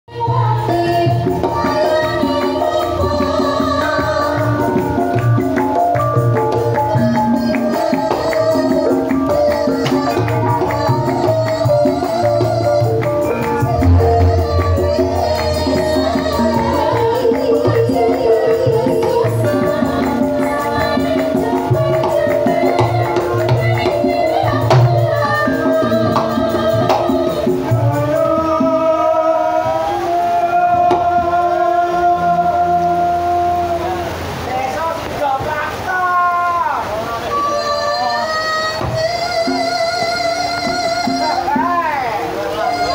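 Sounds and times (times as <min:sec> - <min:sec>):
percussion strokes: 0:00.5 - 0:29.3
held melodic gamelan notes: 0:01.0 - 0:28.7, 0:37.2 - 0:38.9
low drum beat: 0:10.1 - 0:24.0.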